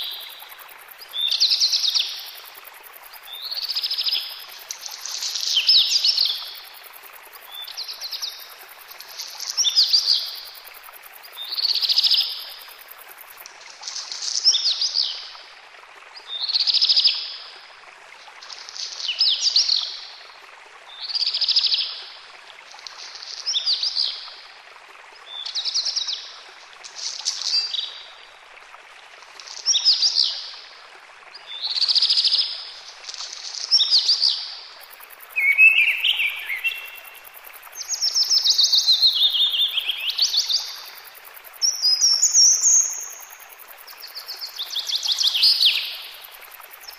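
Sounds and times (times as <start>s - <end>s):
steady background hiss: 0.0s - 46.9s
songbird singing: 35.3s - 46.9s.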